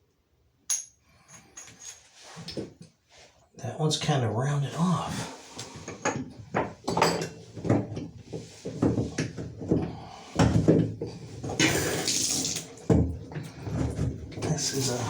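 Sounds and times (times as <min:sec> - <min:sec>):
metal wrench clinking on valve: 0:00.7 - 0:02.0.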